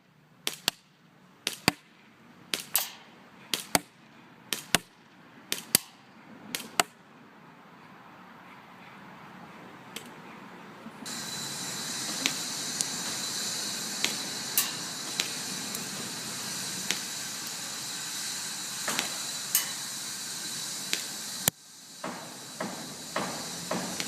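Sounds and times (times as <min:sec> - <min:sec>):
steady high hiss: 0:00.0 - 0:24.0
airsoft pistol snaps: 0:14.0 - 0:15.4, 0:16.9 - 0:17.6, 0:20.9 - 0:21.1.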